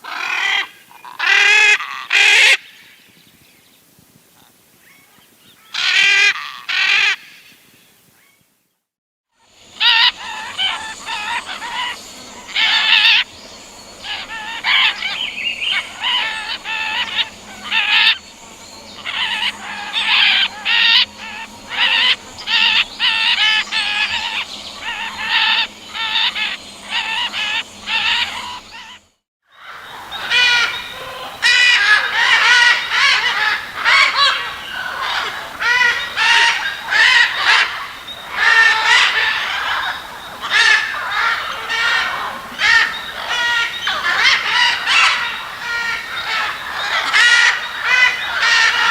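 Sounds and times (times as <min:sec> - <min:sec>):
parrots chirping and squawking: 0:09.8 - 0:13.3, 0:14.0 - 0:18.2, 0:19.0 - 0:29.0, 0:29.6 - 0:48.9.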